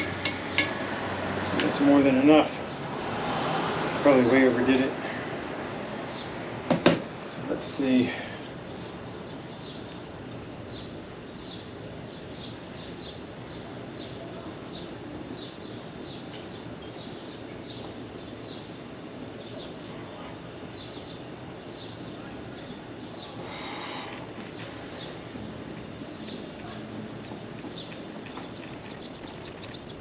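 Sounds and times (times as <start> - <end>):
bird chirping: 10.6 - 30.0.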